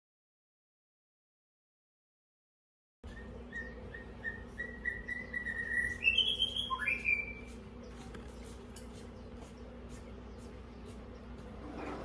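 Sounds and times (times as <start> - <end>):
bird singing: 3.0 - 11.4.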